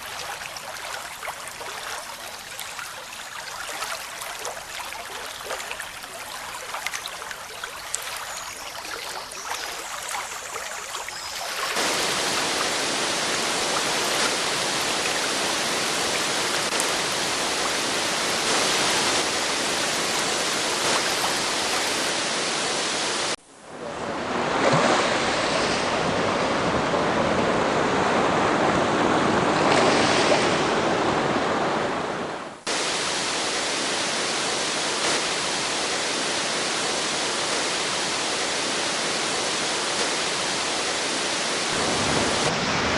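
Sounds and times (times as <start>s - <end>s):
waterfall rushing: 0.0s - 23.4s.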